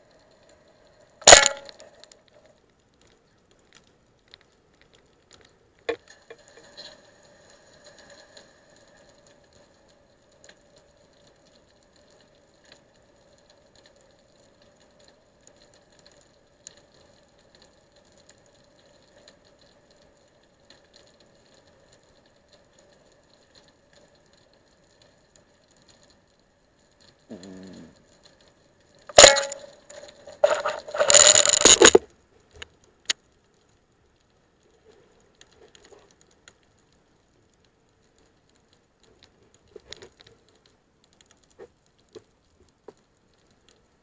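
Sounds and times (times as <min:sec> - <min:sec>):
faint clicks and ticks: 0:00.0 - 0:44.0
faint steady hum: 0:00.0 - 0:44.0.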